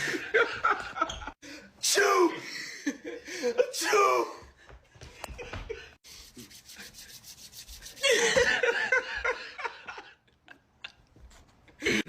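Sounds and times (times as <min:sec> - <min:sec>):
rapid repeated rasping: 0:06.0 - 0:08.2.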